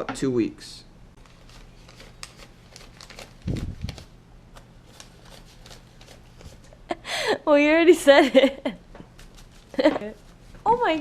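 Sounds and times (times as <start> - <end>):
paper bills rustling: 1.2 - 6.8, 9.1 - 11.0.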